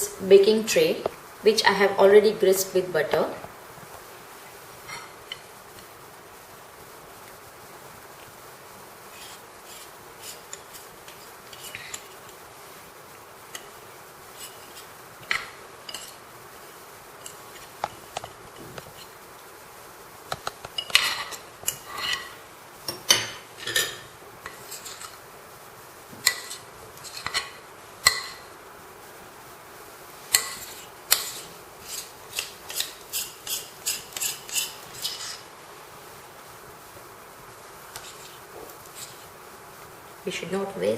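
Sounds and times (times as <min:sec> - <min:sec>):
utensil scraping batter from bowl: 0:24.5 - 0:25.2, 0:30.3 - 0:35.4, 0:38.0 - 0:39.3.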